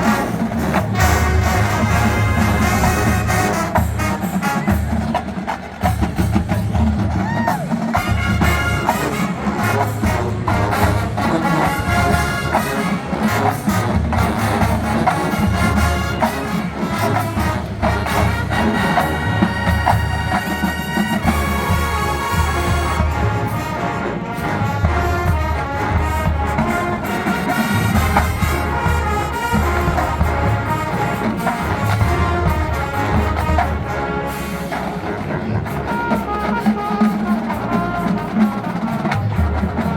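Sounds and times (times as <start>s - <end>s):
marching band playing: 0.0s - 39.9s.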